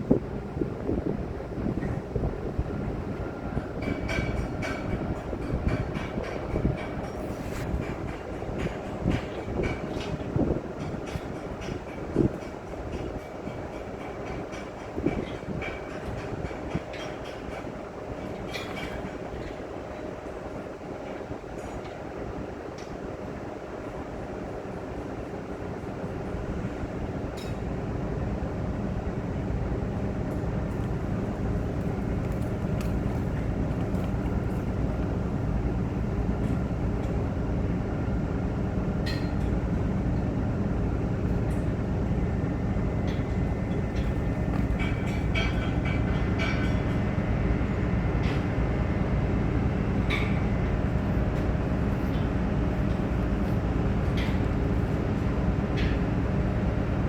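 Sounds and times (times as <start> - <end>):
boat engine droning: 0.0 - 11.8, 23.4 - 57.0.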